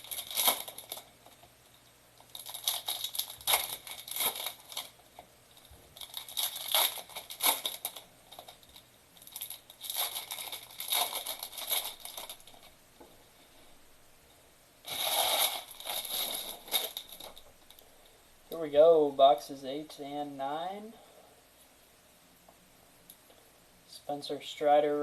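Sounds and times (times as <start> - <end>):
plastic wrapping crinkling and tearing: 0.0 - 1.5, 2.2 - 12.8, 14.8 - 17.9.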